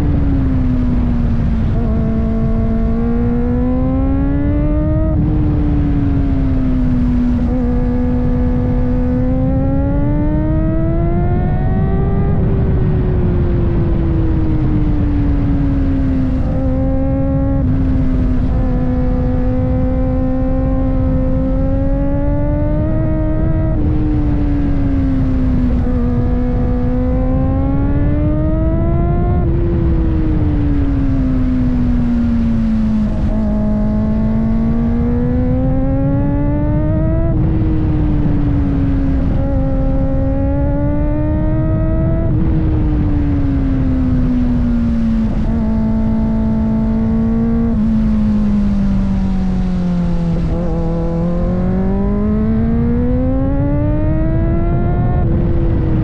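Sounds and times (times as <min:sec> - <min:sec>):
motorcycle engine at high revs: 0:00.0 - 0:56.0
wind rumble on microphone: 0:00.0 - 0:56.0.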